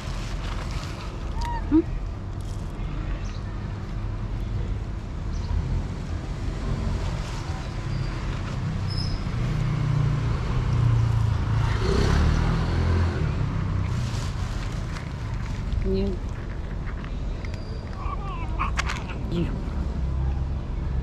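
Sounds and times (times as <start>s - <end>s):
low rumble of road traffic: 0.0s - 21.0s
vehicle engine passing: 5.6s - 16.8s.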